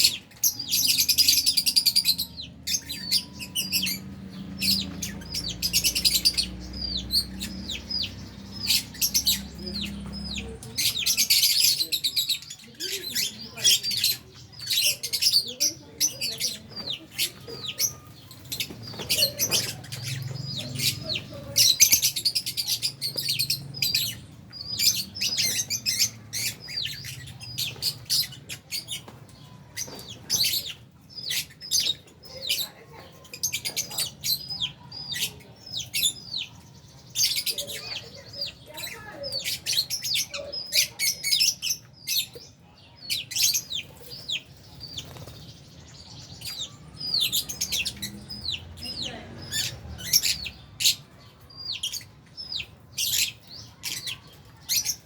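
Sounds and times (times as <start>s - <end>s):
lovebirds chirping: 0.0s - 55.0s.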